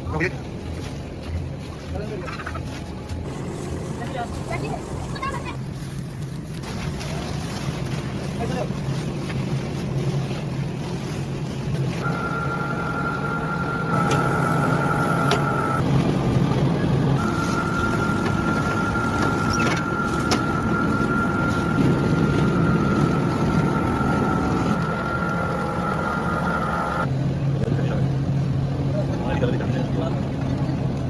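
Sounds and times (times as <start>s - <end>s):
machinery low rumble: 0.0s - 31.0s
machinery high whine: 11.8s - 28.6s.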